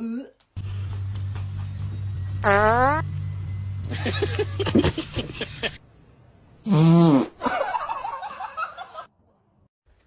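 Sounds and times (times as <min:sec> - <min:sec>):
loud fart: 0:02.4 - 0:03.0, 0:06.6 - 0:07.5
person laughing: 0:03.9 - 0:05.8.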